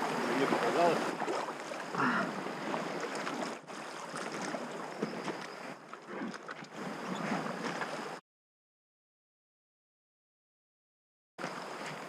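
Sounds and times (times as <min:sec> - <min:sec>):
river water splashing: 0:00.0 - 0:08.2, 0:11.4 - 0:12.0.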